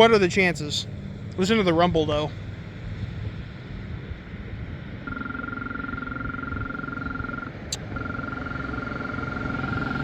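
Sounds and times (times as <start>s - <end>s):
vibrating crosswalk button buzzing: 5.0s - 10.0s.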